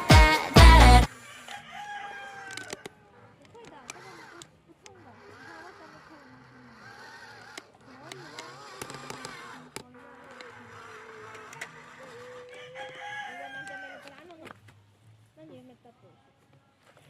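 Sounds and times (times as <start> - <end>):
toy electric motors whining: 2.2 - 14.6
sharp clicks: 6.8 - 11.8.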